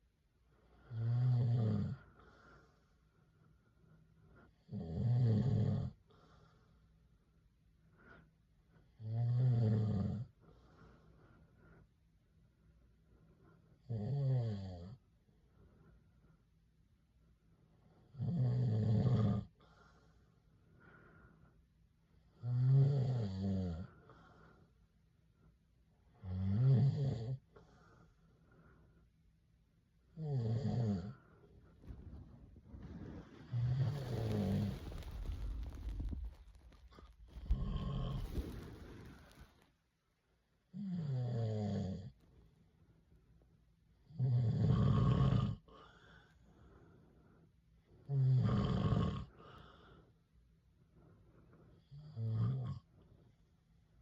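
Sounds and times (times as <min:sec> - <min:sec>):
faint breathing: 0:02.1 - 0:04.5, 0:10.4 - 0:12.1, 0:19.6 - 0:21.8, 0:23.8 - 0:25.6, 0:31.1 - 0:39.8, 0:45.7 - 0:47.6, 0:49.3 - 0:51.8.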